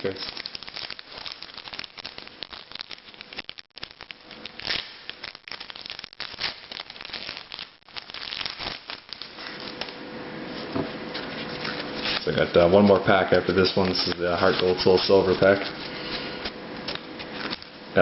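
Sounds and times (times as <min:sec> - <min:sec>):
foil wrapper crinkling and tearing: 0:00.0 - 0:10.0, 0:11.1 - 0:17.8.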